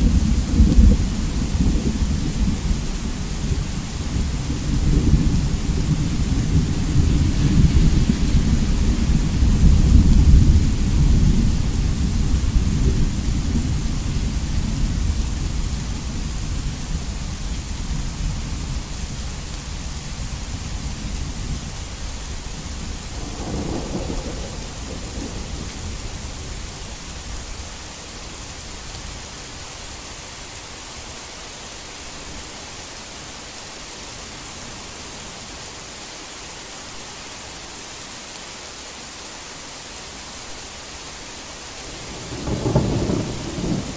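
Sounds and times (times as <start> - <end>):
thunder rolling: 0.0 - 15.7, 23.1 - 26.9, 41.9 - 43.9
heavy rain hissing: 0.0 - 43.9.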